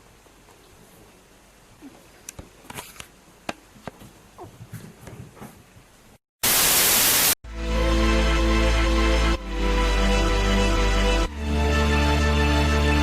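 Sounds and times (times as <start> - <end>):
loud static hiss burst: 6.4 - 7.4
music: 7.4 - 13.0.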